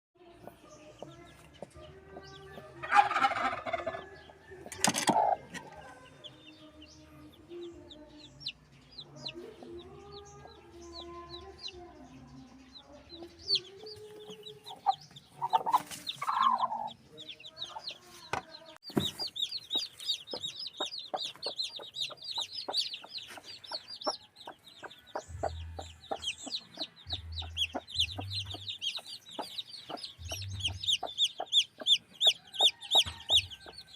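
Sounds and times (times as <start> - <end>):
chickens clucking: 0.2 - 33.9
chicks peeping: 0.2 - 33.9
loud chicken calls: 2.8 - 4.0.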